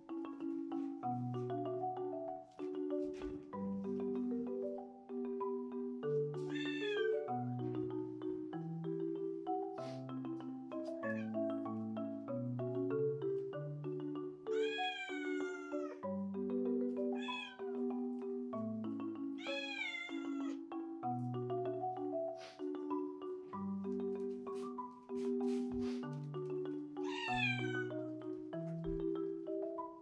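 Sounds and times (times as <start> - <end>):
marimba background music: 0.0 - 30.0
cat meowing: 6.5 - 7.2, 14.6 - 16.0, 17.2 - 17.6, 19.4 - 20.6, 27.0 - 27.9.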